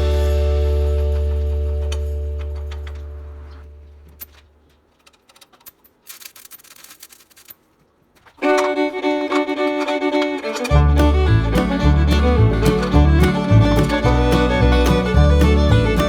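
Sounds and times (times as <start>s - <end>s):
upbeat bluegrass fiddle tune: 0.0s - 2.1s, 8.4s - 16.0s
background music track: 0.0s - 2.2s, 8.5s - 16.0s
bass line: 0.0s - 3.5s, 10.7s - 16.0s.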